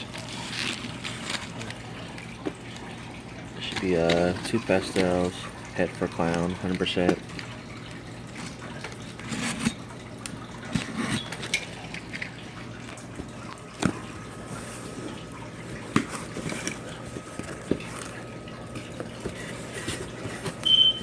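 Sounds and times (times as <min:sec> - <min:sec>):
cardboard and packing rustling: 0:00.0 - 0:02.6, 0:03.6 - 0:05.4, 0:12.7 - 0:20.7.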